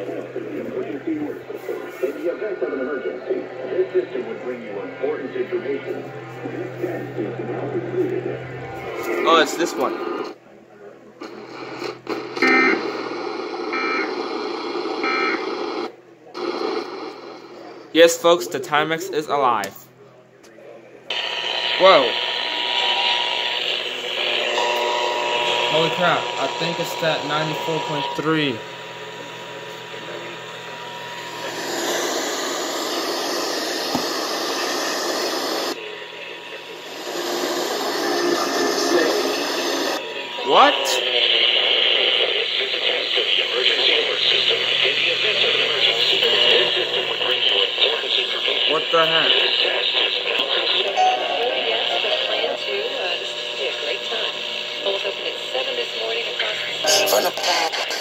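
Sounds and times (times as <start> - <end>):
radio hiss: 0.0 - 10.4, 11.2 - 19.8, 21.1 - 58.0
digital data tone bursts: 21.1 - 47.4, 56.8 - 58.0.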